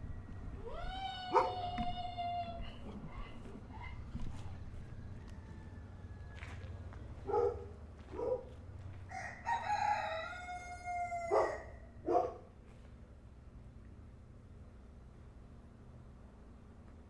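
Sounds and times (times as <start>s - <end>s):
rooster crowing: 3.8s - 6.9s, 9.1s - 11.9s.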